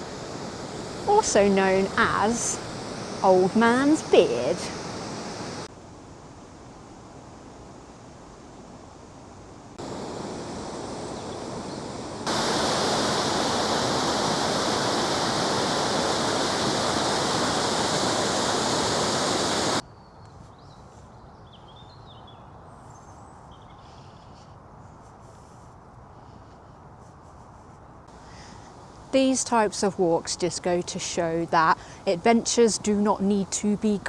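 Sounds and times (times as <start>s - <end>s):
rushing river water: 9.8s - 19.8s
faint bird chirps: 19.8s - 25.0s.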